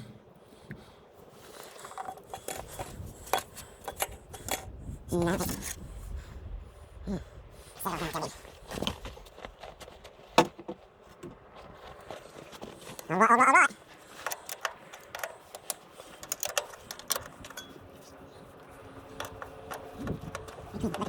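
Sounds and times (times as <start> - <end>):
metal tools clinking: 1.7 - 5.8, 13.9 - 18.2
wavering animal cry: 13.0 - 13.8.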